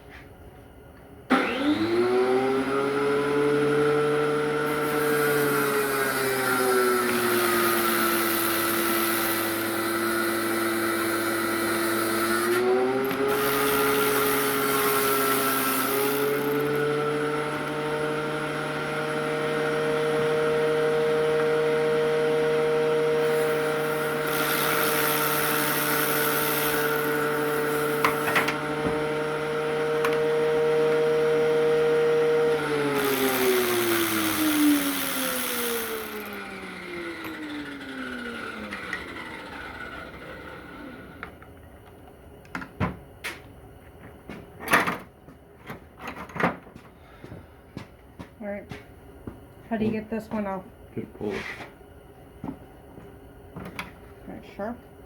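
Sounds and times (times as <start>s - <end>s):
motor humming: 4.2s - 41.6s.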